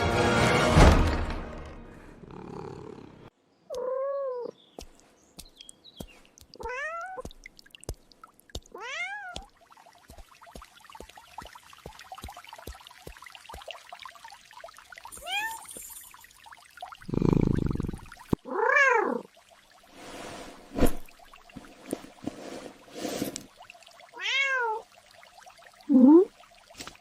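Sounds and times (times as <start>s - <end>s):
cat meowing: 3.7s - 4.5s.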